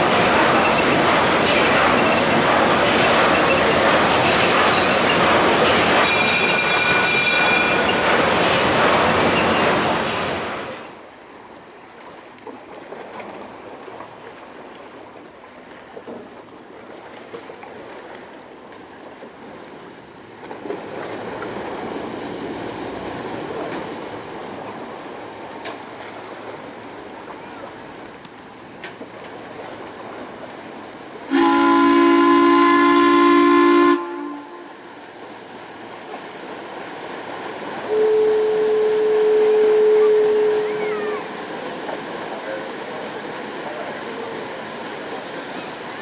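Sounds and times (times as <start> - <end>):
steam whistle chord: 31.3 - 34.8, 37.9 - 41.0.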